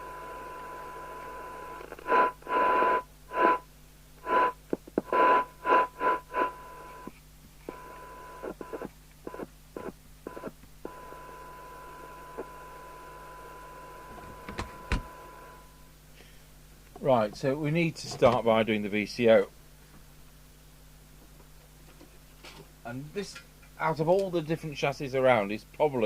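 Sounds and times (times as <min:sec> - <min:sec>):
bursts of radio hiss: 0:00.7 - 0:12.7
steady test tone: 0:04.2 - 0:07.1, 0:07.7 - 0:15.9.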